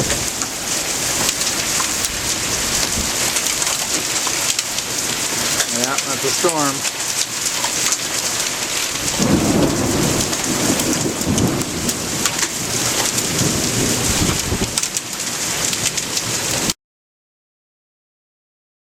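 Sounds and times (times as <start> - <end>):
thunder rumbling: 0.0 - 6.5, 7.3 - 16.7
heavy rain pouring: 0.0 - 16.8.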